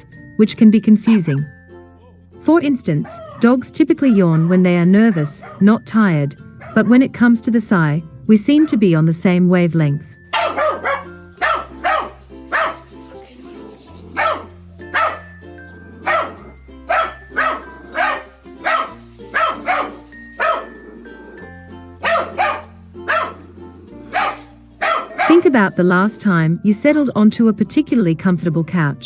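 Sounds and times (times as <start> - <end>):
dog barking: 3.0 - 5.8, 6.6 - 7.0, 10.3 - 12.9, 14.1 - 15.3, 16.0 - 21.2, 22.0 - 23.4, 24.1 - 25.8.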